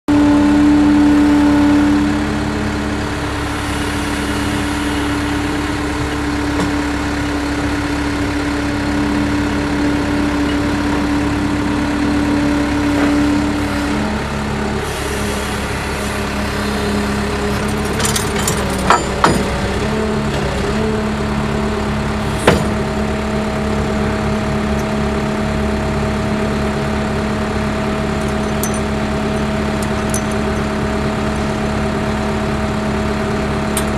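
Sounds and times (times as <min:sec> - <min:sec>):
skid steer engine running: 0:00.0 - 0:33.9
humming tone: 0:00.1 - 0:22.9.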